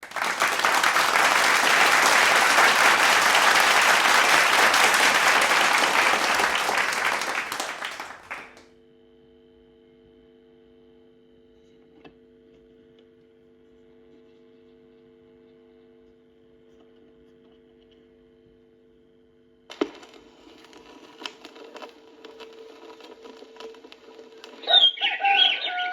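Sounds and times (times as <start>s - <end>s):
loud dense crackling: 0.0s - 8.6s
record playback hum: 19.7s - 25.9s.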